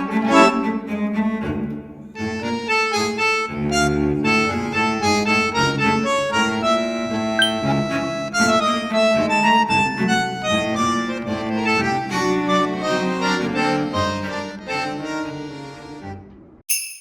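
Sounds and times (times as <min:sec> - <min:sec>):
cheerful accordion-like music: 0:00.0 - 0:00.9, 0:02.2 - 0:16.1.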